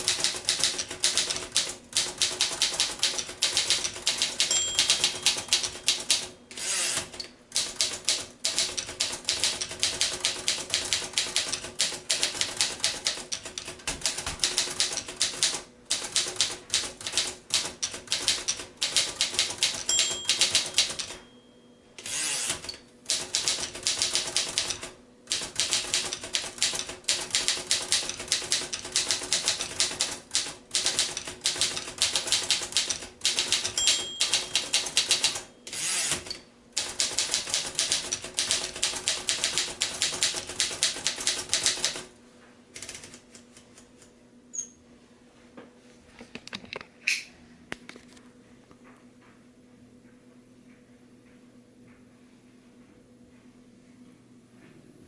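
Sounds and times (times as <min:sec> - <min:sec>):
typewriter typebar strikes: 0:00.0 - 0:21.3, 0:22.0 - 0:42.0
typewriter bell ding: 0:03.6 - 0:06.3, 0:18.9 - 0:22.8, 0:33.4 - 0:36.4.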